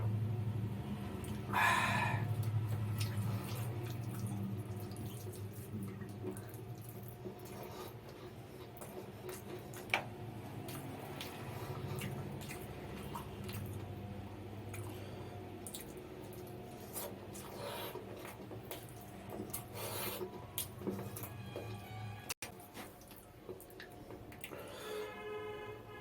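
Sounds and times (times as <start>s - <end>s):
wet chewing with mouth clicks: 1.2s - 21.8s, 22.4s - 24.9s.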